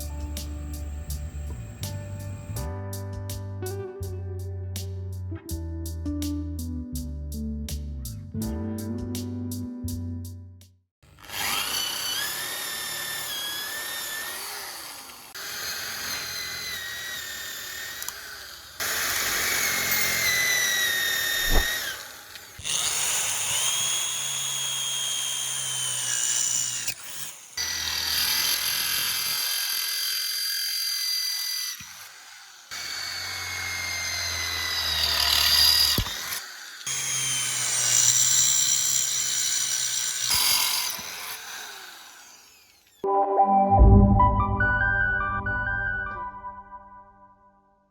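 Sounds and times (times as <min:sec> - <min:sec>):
electric drill motor whine: 0:00.0 - 0:02.5, 0:11.1 - 0:43.0.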